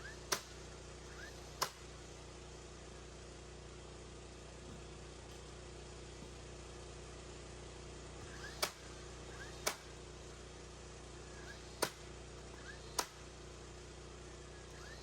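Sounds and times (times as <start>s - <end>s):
steady low hum: 0.0s - 15.0s
hammer striking nails: 13.0s - 13.2s.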